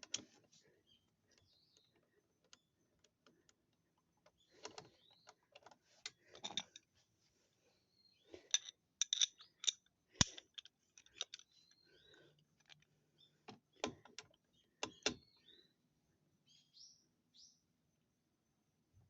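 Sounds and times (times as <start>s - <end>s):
hand tools clicking and knocking: 0.0s - 0.4s, 4.5s - 6.9s, 8.4s - 11.6s.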